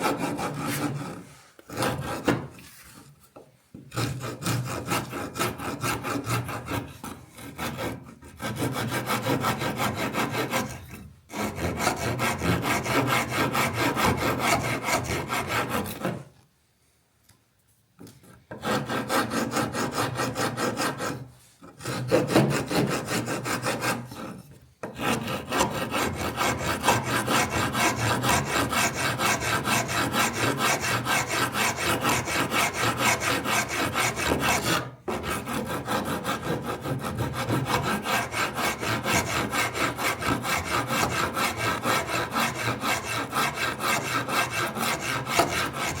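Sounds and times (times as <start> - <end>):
wood rasp filing wood: 0.0 - 3.1, 3.9 - 16.3, 18.2 - 46.0.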